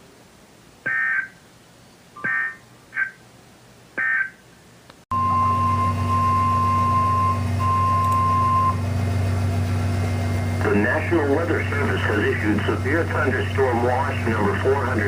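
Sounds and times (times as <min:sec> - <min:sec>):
radio hum: 0:00.8 - 0:01.5, 0:02.1 - 0:03.3, 0:03.9 - 0:04.5, 0:09.8 - 0:15.0
steady warning alarm tone: 0:00.9 - 0:01.4, 0:02.2 - 0:03.2, 0:05.1 - 0:14.8.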